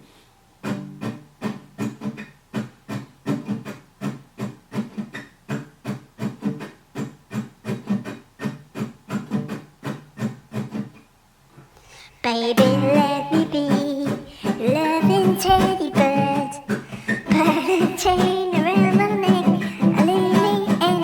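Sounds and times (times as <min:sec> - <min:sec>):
guitar strumming chords: 0:12.3 - 0:21.0.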